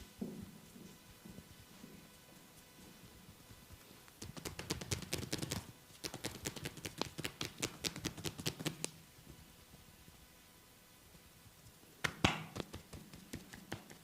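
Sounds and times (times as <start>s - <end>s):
hand slaps on skin: 12.0s - 14.0s.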